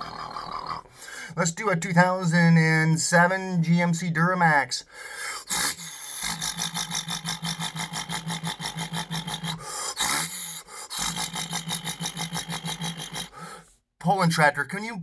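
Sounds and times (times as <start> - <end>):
man imitating diesel engine idling: 5.5 - 13.6.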